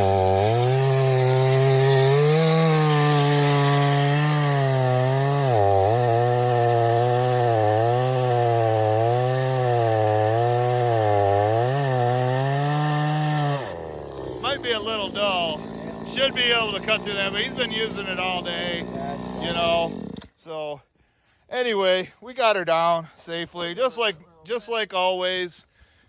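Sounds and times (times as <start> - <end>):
chainsaw cutting wood under load: 0.0 - 20.4.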